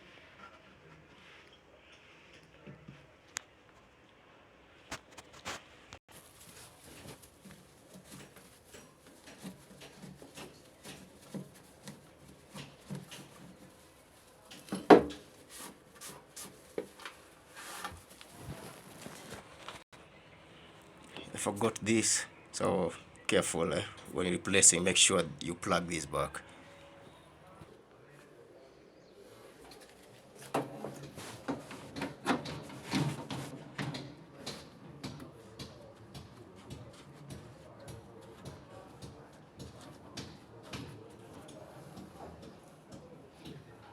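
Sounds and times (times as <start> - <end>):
rubbing of machine parts: 5.3 - 19.9.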